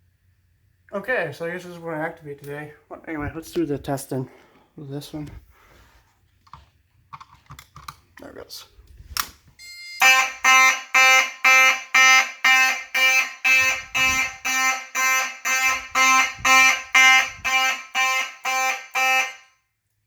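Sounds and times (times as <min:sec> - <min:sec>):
fire alarm horn blasts: 0:09.6 - 0:19.8.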